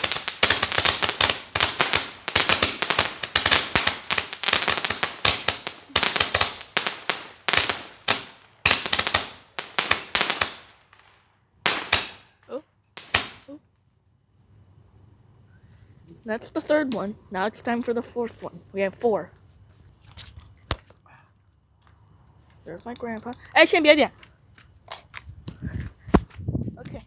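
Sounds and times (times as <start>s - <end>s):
firework bangs and crackles: 0.0s - 13.6s.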